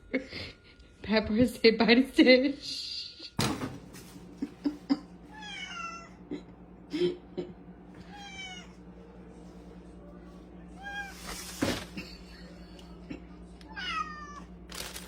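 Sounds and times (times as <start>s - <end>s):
cat meowing: 5.3s - 6.2s, 8.0s - 8.7s, 13.7s - 14.5s.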